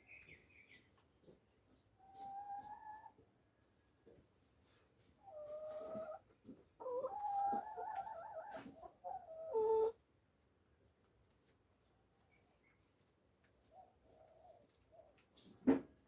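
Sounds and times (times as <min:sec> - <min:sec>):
chicken calling: 0:06.8 - 0:10.0.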